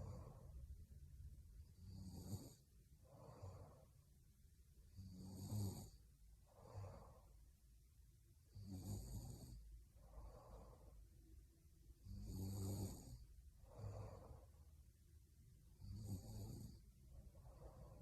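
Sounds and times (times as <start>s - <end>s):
woman snoring faintly: 0.0s - 0.6s, 12.0s - 14.6s, 15.8s - 18.0s.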